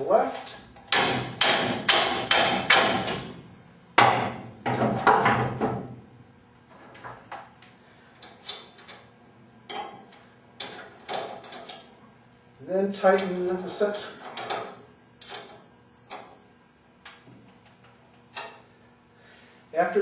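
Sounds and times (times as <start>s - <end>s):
hammer striking metal spring: 0.9s - 3.3s.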